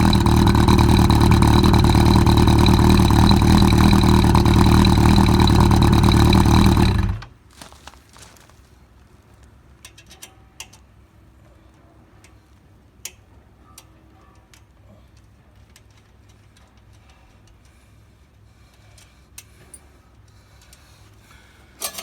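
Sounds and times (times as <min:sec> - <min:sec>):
motorcycle engine idling: 0:00.0 - 0:07.4.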